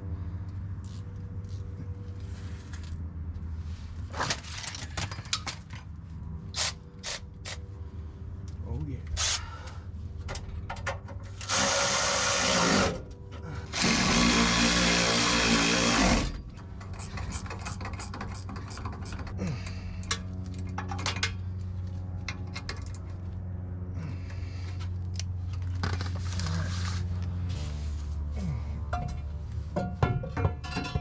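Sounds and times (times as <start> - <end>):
steady low hum: 0.0 - 31.0
power tool running: 11.4 - 13.1, 13.7 - 16.4.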